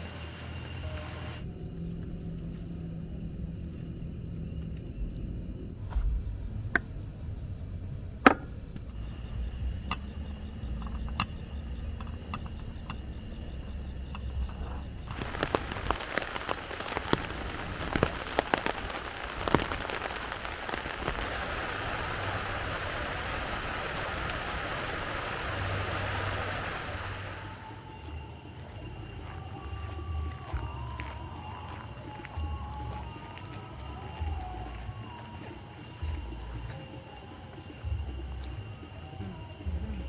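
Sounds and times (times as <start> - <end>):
low rumble: 0.0 - 35.1
rain drops on tent: 15.0 - 27.8.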